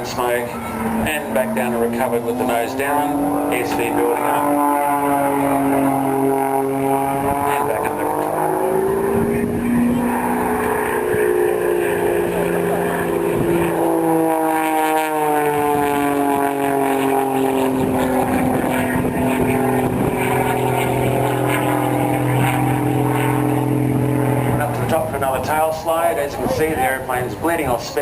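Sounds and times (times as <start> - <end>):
aircraft piston engine and propeller: 0.0 - 28.0.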